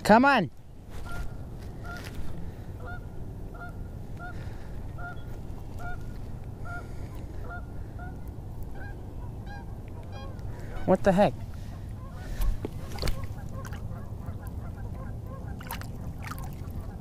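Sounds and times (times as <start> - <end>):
low steady rumble: 0.0 - 17.0
goose honking: 2.8 - 15.7.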